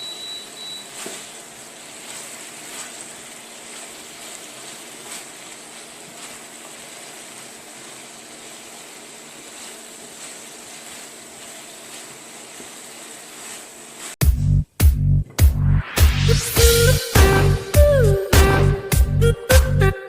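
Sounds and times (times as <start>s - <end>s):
chicken sizzling in a pan: 0.0s - 14.2s.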